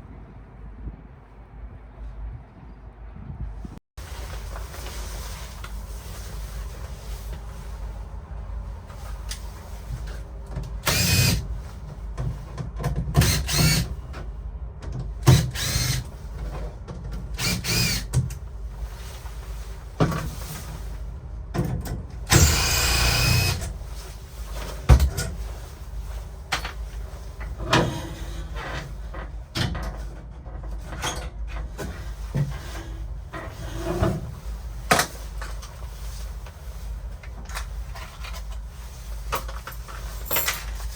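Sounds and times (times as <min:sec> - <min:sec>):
cordless drill whining: 0:10.8 - 0:11.4, 0:13.2 - 0:13.9, 0:15.3 - 0:16.1, 0:17.4 - 0:18.1, 0:22.3 - 0:23.7.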